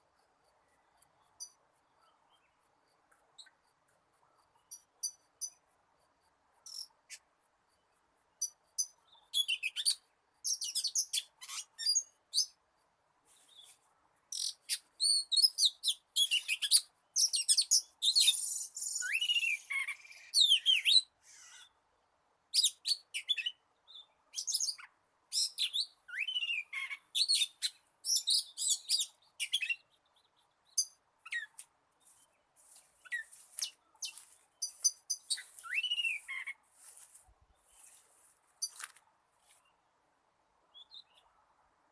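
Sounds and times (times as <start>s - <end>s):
bird singing whistles and chirps: 8.8s - 12.6s, 14.3s - 21.6s, 22.6s - 23.6s, 24.4s - 29.9s, 34.0s - 36.6s.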